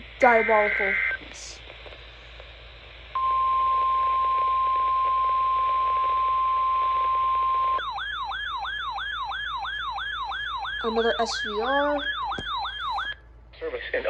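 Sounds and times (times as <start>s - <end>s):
radio hiss: 0.0s - 3.2s, 13.6s - 14.0s
steady alarm tone: 3.2s - 13.2s
fast whooping electronic siren: 7.6s - 13.2s.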